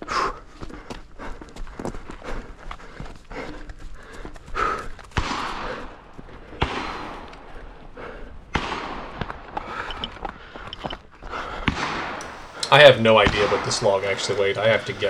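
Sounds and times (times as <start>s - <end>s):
man gasping breaths: 0.0s - 8.5s, 9.6s - 12.7s
footsteps and gear rattling: 9.9s - 11.0s.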